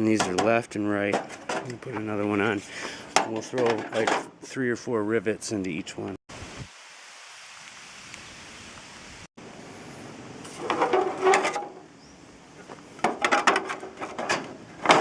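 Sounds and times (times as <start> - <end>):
aluminium gutter parts clattering: 0.0 - 4.5, 10.4 - 11.9, 12.6 - 15.0.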